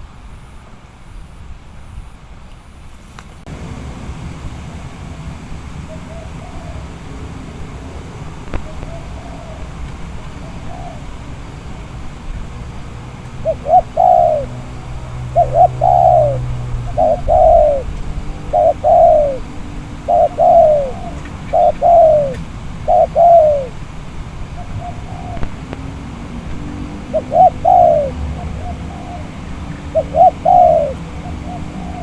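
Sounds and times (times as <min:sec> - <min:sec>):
dove cooing: 0:03.6 - 0:32.0.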